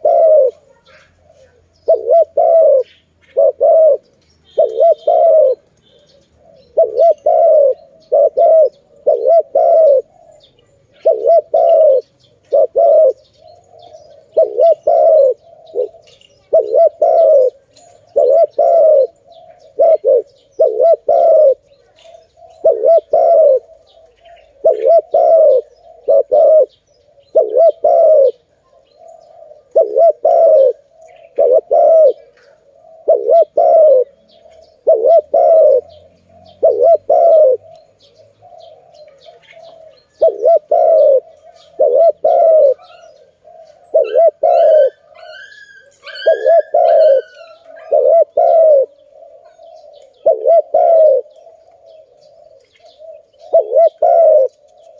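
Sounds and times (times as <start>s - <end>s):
dove cooing: 0.0s - 54.9s
high-pitched bird chirping: 0.0s - 54.9s.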